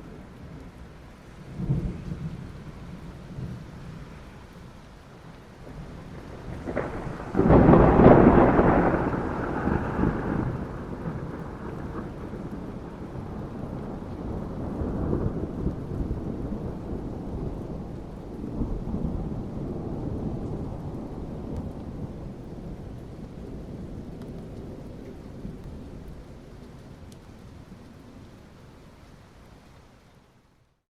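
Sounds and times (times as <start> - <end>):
steady rain: 0.0 - 30.9
thunder rumbling: 1.5 - 4.6, 5.5 - 26.6.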